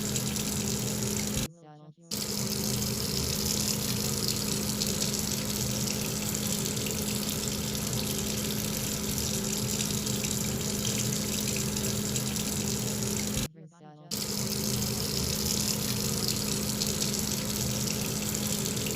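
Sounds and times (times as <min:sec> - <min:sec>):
running water: 0:00.0 - 0:01.5, 0:02.1 - 0:13.5, 0:14.1 - 0:18.9
low even hum: 0:02.1 - 0:13.5.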